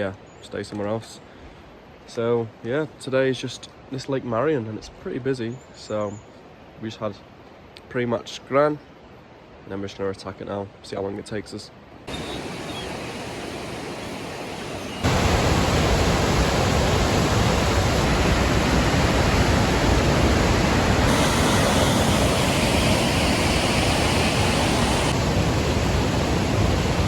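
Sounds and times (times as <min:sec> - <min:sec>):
loud steady rushing noise: 0:12.1 - 0:27.0.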